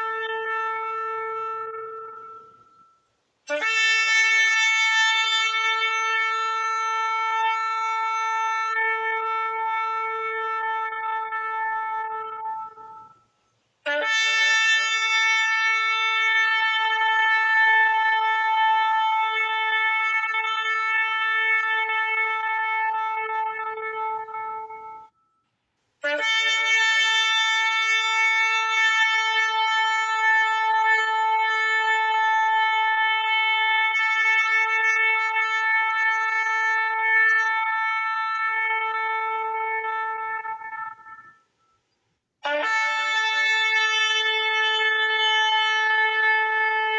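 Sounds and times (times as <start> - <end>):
ram's horn blasts: 0.0 - 46.9.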